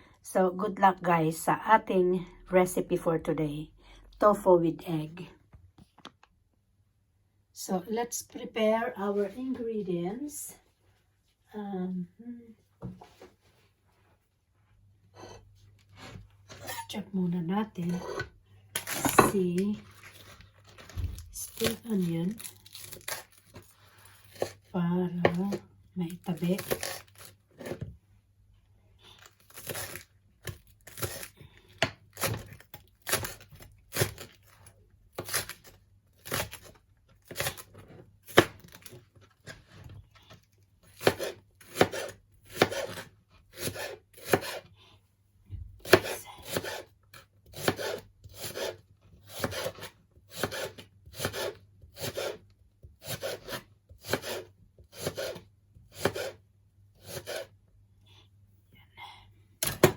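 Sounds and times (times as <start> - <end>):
knife chopping on wooden board: 41.0 - 43.0, 43.6 - 44.6, 45.8 - 46.9, 47.5 - 52.4, 53.0 - 55.4, 56.0 - 56.4, 59.6 - 59.9.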